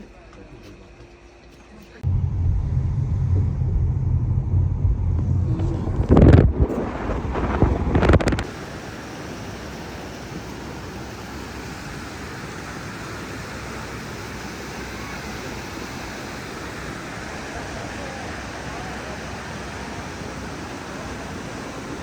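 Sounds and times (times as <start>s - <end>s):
loud low rumble: 2.0s - 8.5s
waterfall rushing: 7.0s - 22.0s.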